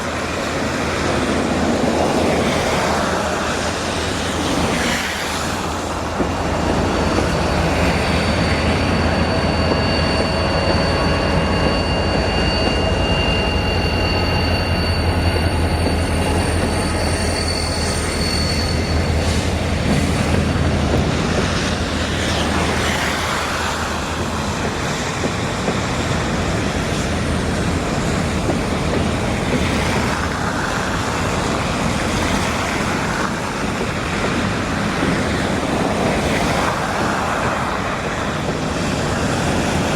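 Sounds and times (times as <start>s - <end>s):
freight train rumbling past: 0.0s - 39.9s
high-pitched wheel squeal: 6.4s - 24.2s.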